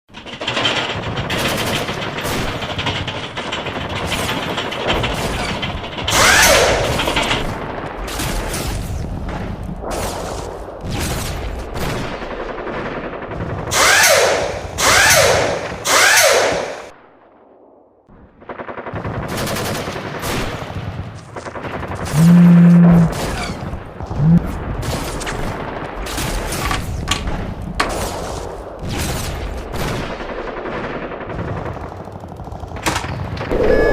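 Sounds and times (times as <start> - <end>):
dense rapid clatter: 0.1 - 10.6, 18.4 - 33.5
loud bursts falling in pitch: 22.1 - 23.2.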